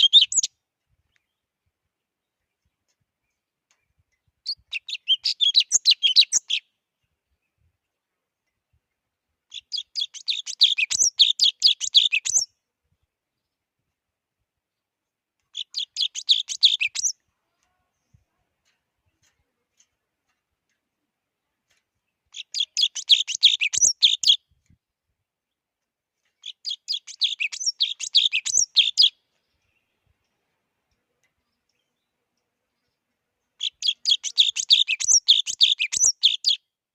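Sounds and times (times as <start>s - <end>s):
sparrow chirping: 0.0s - 0.5s, 2.2s - 6.8s, 9.5s - 12.5s, 15.5s - 17.2s, 22.1s - 24.4s, 26.4s - 30.2s, 31.4s - 36.6s.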